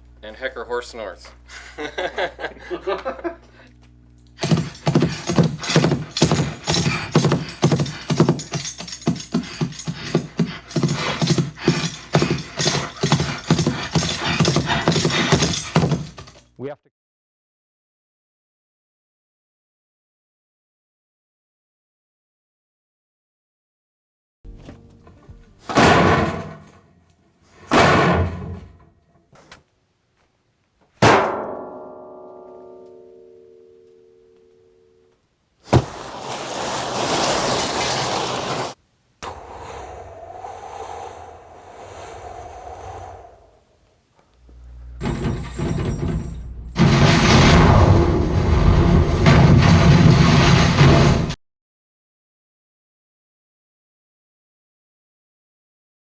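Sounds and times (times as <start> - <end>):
bridle jingle: 4.4 - 16.4
hoofbeats clip-clopping: 4.4 - 16.4
sharp ringing hit: 31.2 - 34.4
loud whooshing swells: 39.2 - 45.0.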